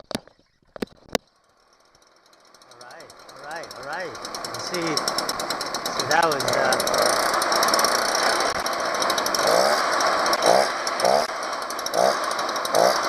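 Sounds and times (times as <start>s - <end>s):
leaf blower engine idling: 1.1s - 13.0s
engine revving blips: 1.6s - 13.0s.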